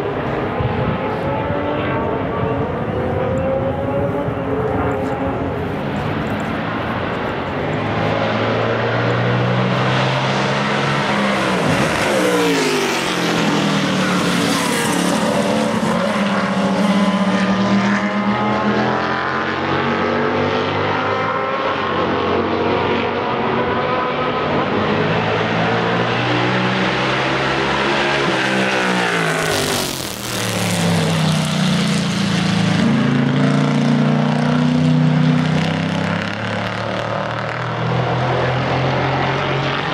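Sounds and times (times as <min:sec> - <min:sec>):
racing car engines: 0:00.0 - 0:39.9
car passing by: 0:03.2 - 0:21.9.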